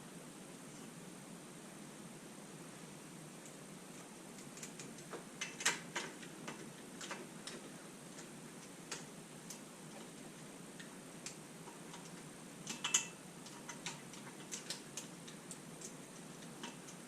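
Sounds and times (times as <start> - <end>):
hand tools clicking on metal: 10.8 - 17.0.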